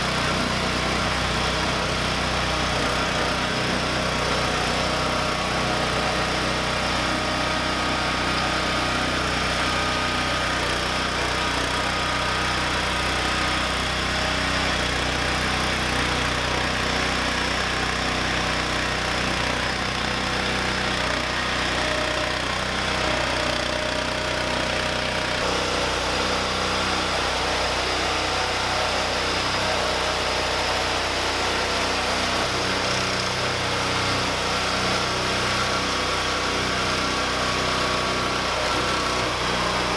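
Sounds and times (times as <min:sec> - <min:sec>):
lawn tractor engine running: 0:00.0 - 0:39.9.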